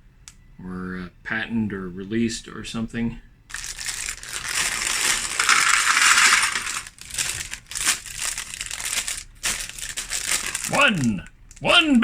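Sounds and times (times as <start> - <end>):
plastic bags crinkling: 3.5 - 11.6.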